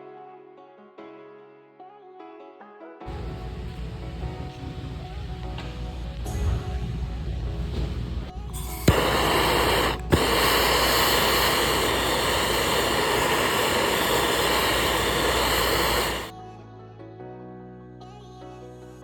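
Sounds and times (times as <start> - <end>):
pressurised jet spray hiss: 3.1 - 16.3.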